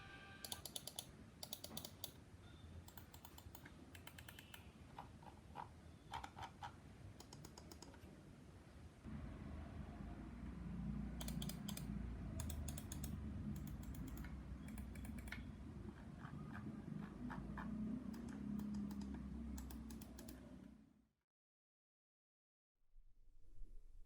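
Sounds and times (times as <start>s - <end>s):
mouse buttons clicking: 0.4s - 2.2s, 2.9s - 6.6s, 7.2s - 8.0s, 11.2s - 20.5s
low steady hum: 8.3s - 20.9s.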